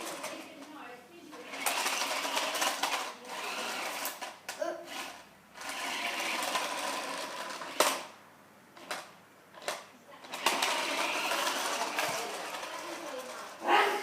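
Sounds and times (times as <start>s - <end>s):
toy car motor whirring: 1.4s - 8.1s, 10.2s - 13.6s.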